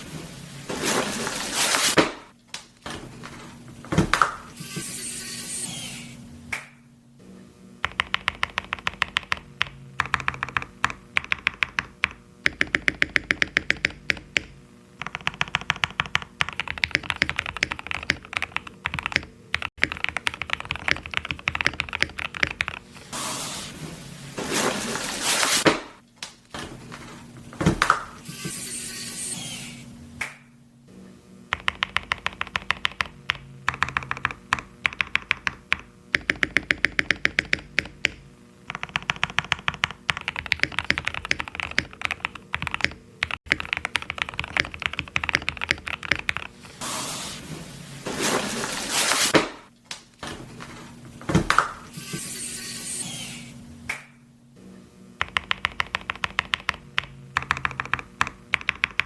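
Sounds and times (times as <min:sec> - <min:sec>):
mechanical keyboard typing: 0:07.8 - 0:22.9, 0:31.5 - 0:46.6, 0:55.2 - 0:59.0.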